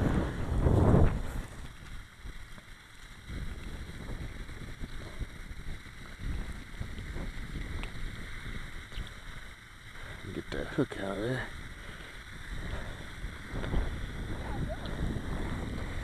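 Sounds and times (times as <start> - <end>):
wind buffeting microphone: 0.0 - 16.0
faint scattered ticks: 1.6 - 16.0.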